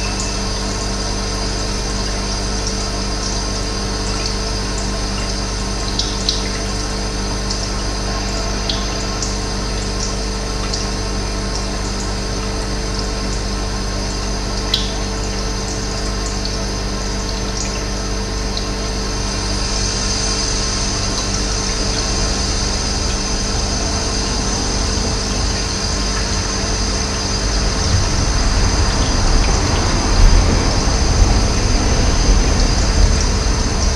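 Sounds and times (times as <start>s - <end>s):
low even hum: 0.0s - 33.9s
running water rushing: 0.0s - 33.9s
low rumble: 18.3s - 33.9s.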